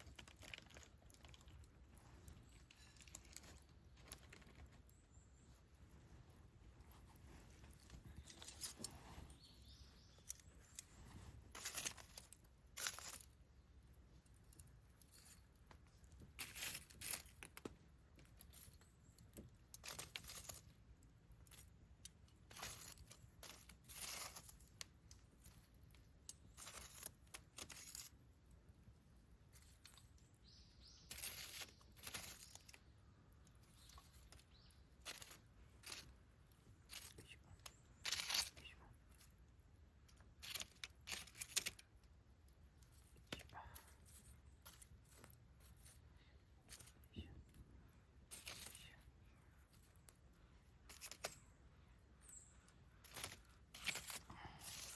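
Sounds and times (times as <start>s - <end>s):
campfire crackling: 0.0s - 54.9s.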